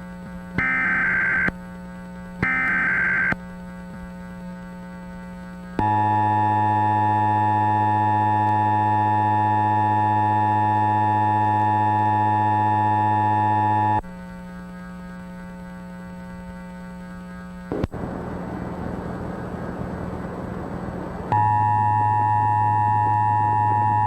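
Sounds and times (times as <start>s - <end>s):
low hum: 0.3s - 24.0s
dual-tone alert alarm: 0.6s - 1.5s, 2.4s - 3.4s, 5.8s - 14.0s.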